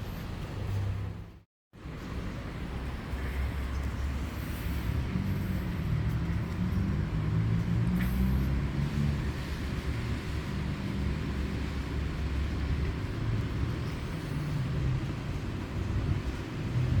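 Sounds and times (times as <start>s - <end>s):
vehicle engine rumble: 0.0s - 17.0s.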